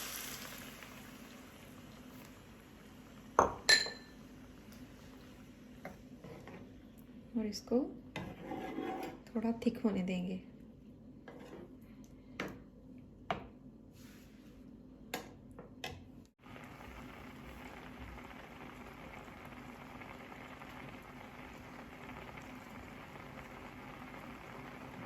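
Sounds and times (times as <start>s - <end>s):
sauce simmering in a pan: 0.0s - 6.1s, 16.4s - 25.0s.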